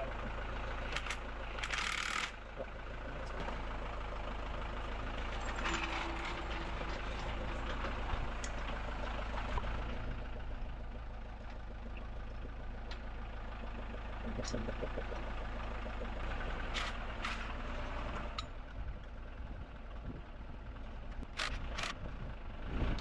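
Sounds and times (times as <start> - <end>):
low mechanical hum: 0.0 - 23.0.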